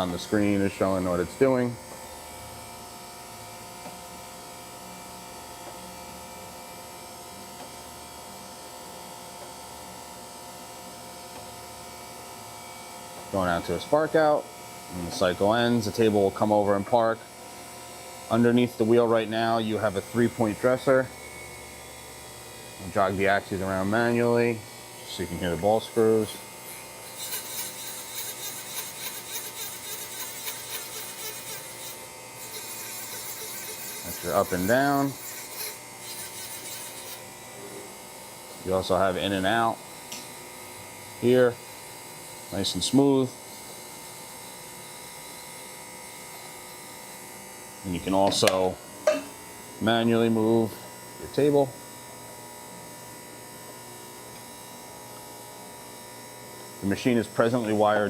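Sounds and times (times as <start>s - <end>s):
grinder spindle whine: 22.8s - 40.1s.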